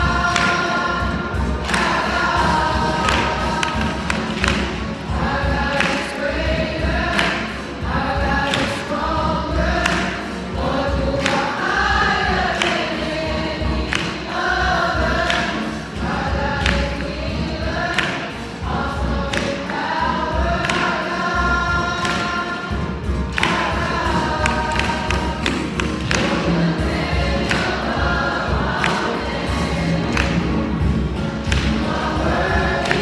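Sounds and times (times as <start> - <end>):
choir singing gospel: 0.0 - 33.0
instrumental backing: 0.0 - 33.0
steady percussive beat: 0.0 - 33.0.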